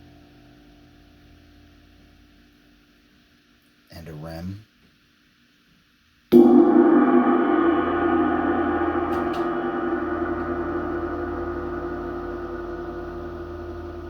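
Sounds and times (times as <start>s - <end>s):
cymbal struck and ringing: 6.3s - 14.0s.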